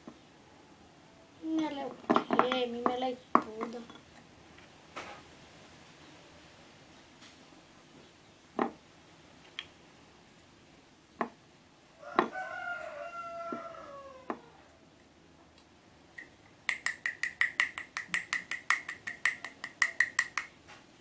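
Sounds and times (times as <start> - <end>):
rooster crowing: 12.0 - 14.8.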